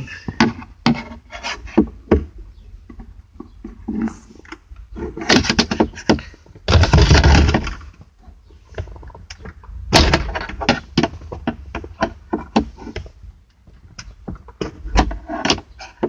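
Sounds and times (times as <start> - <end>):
rubbing and rattling: 0.0 - 16.0.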